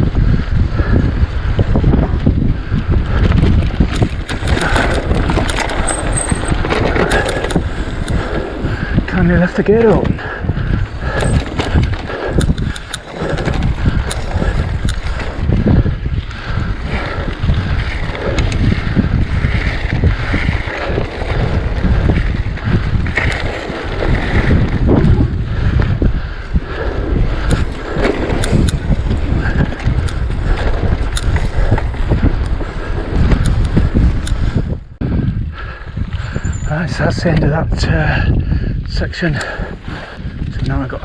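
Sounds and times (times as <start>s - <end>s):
bike clicks and rattles: 0.0s - 41.0s
bike tyre rumble: 0.0s - 41.0s
wind buffeting microphone: 0.0s - 41.0s.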